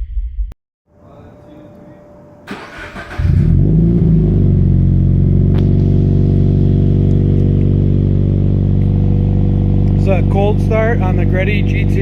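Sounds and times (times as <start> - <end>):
car engine fast idle: 2.5 - 3.6
car engine cold start revving: 2.5 - 6.0.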